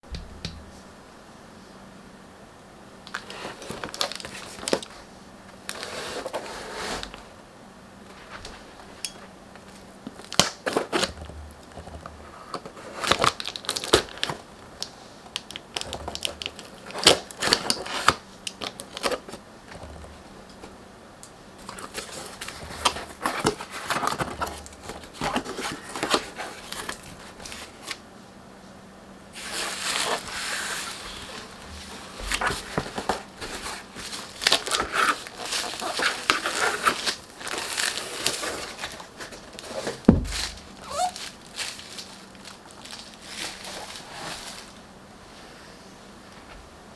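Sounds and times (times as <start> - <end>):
packaging crinkling and tearing: 3.1 - 5.0, 9.6 - 20.1, 21.6 - 28.0, 29.4 - 44.8.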